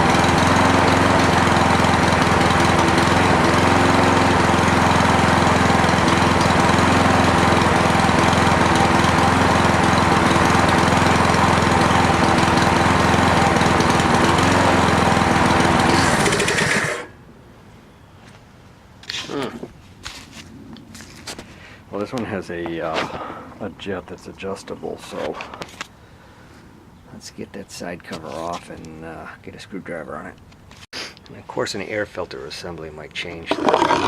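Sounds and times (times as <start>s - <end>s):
lawn mower engine running: 0.0s - 17.2s, 33.4s - 34.0s.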